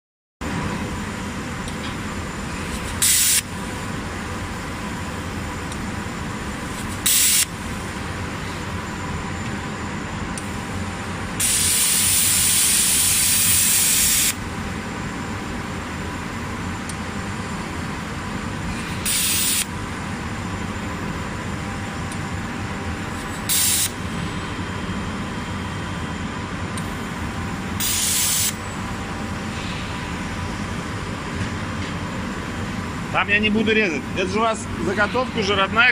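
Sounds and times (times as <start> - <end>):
steady machine hum: 0.4 - 35.9
plasma torch hissing: 3.0 - 3.4, 7.0 - 7.4, 11.4 - 14.3, 19.1 - 19.6, 27.8 - 28.6.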